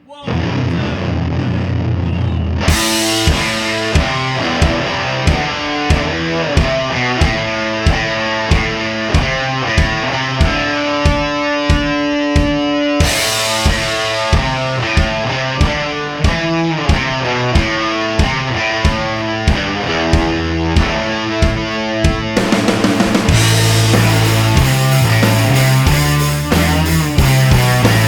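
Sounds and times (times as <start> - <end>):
rock guitar: 0.3 - 28.0
steady drum beat: 2.6 - 28.0
cymbal crash: 22.6 - 27.0.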